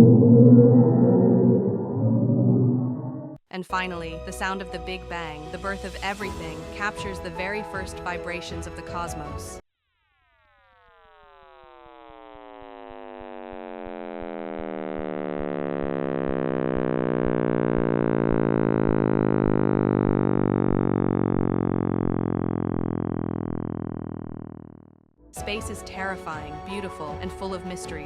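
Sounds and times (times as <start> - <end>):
synthesized tones gliding downward: 0.0 - 3.4, 10.9 - 24.6.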